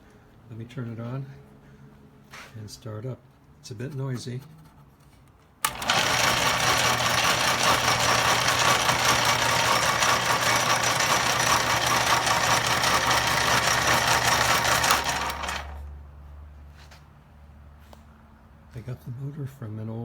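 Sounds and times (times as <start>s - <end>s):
low motor hum: 5.6s - 15.9s
machine running mechanical noise: 5.6s - 15.9s.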